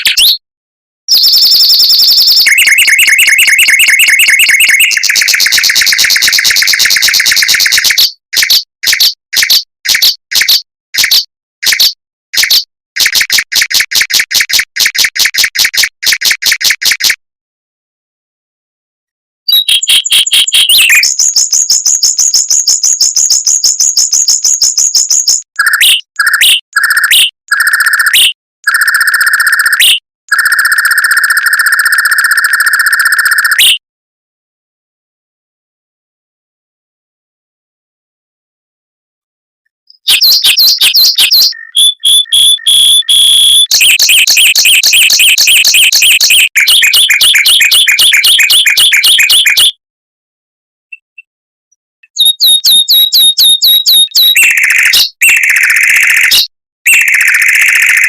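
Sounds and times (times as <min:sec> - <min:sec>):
mockingbird song: 0:01.1 - 0:12.7, 0:19.5 - 0:27.3, 0:39.9 - 0:49.8, 0:50.9 - 0:51.3, 0:52.0 - 0:57.9.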